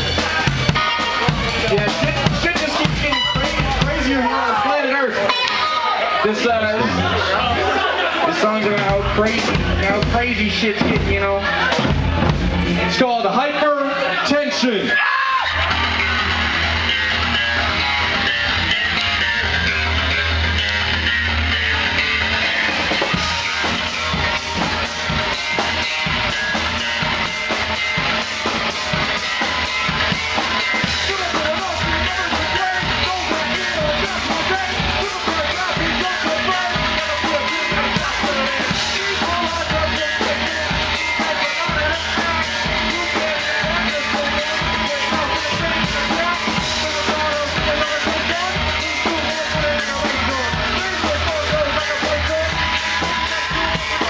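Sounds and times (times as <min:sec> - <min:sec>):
drum kit: 0:00.0 - 0:06.0, 0:07.4 - 0:13.1, 0:15.3 - 0:54.0
bass: 0:00.0 - 0:54.0
guitar: 0:00.0 - 0:54.0
person singing: 0:30.7 - 0:54.0.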